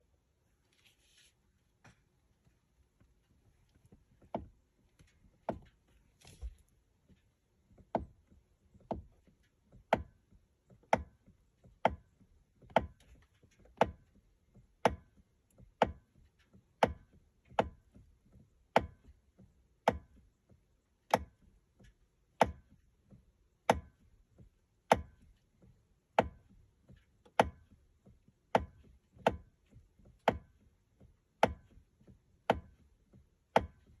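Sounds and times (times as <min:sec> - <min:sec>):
steering wheel clicking: 0:03.0 - 0:34.0.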